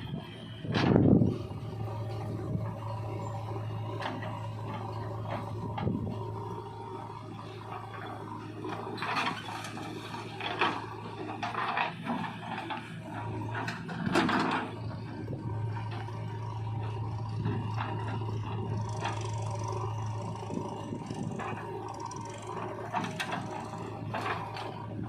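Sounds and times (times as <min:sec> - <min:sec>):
motor humming: 0:12.6 - 0:25.0.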